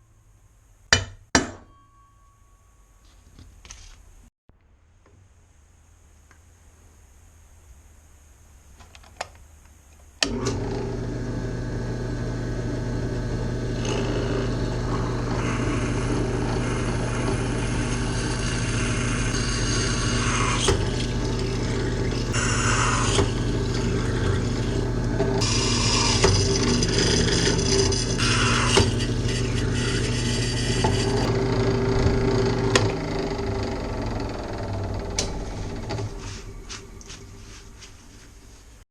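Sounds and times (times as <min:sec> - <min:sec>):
power tool grinding metal: 0:10.3 - 0:36.6.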